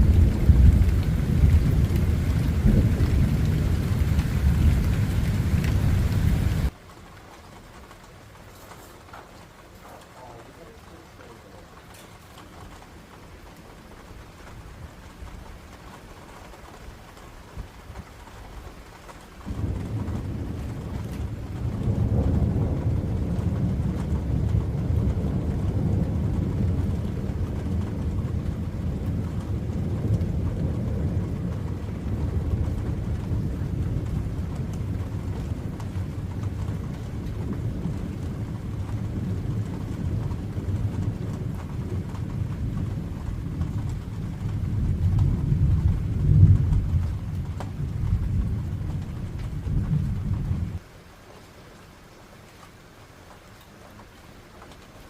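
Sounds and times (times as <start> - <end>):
thunder rumbling: 0.0 - 6.9, 18.8 - 50.8.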